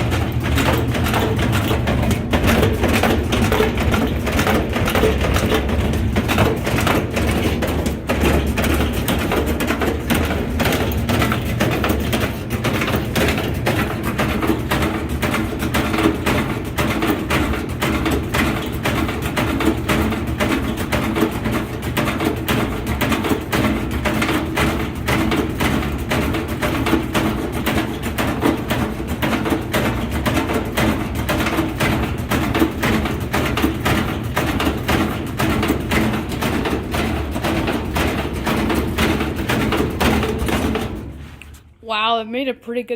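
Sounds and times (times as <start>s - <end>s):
low motor hum: 0.0s - 16.6s
washing machine tub knocking: 0.0s - 42.0s.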